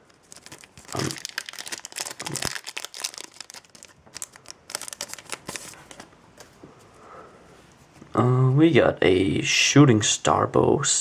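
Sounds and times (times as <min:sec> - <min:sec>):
foil wrapper crinkling and tearing: 0:00.0 - 0:06.0.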